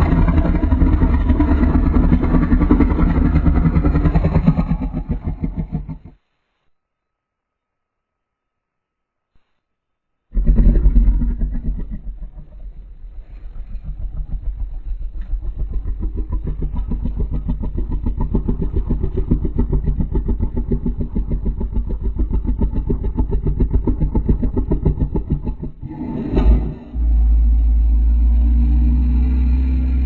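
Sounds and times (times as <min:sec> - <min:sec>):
low pulsing monster rumble: 0:00.0 - 0:06.2, 0:10.3 - 0:30.0.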